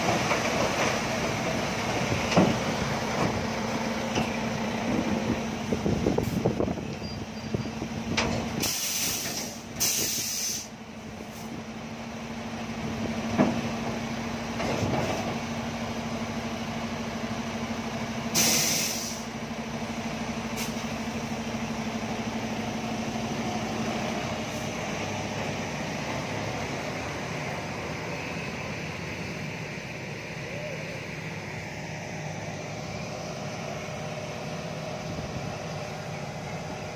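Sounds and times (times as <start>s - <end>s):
diesel truck engine running: 0.0s - 36.9s
air brake hiss: 8.6s - 11.5s, 18.3s - 19.4s, 20.6s - 20.9s.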